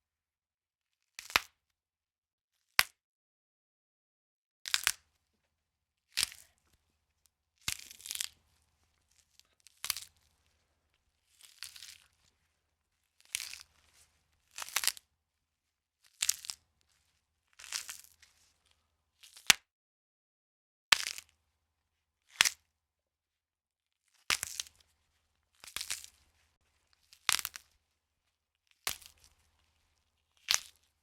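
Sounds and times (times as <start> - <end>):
crunchy bone cracks: 30.4 - 30.8.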